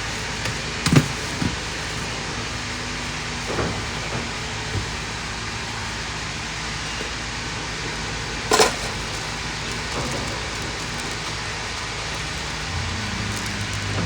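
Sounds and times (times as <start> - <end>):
background hum: 6.9 - 14.0.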